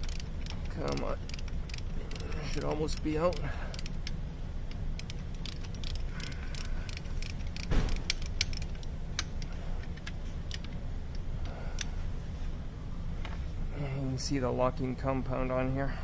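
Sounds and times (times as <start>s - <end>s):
metal ratchet clicking: 0.0s - 11.9s
loud metallic knock: 7.6s - 8.2s.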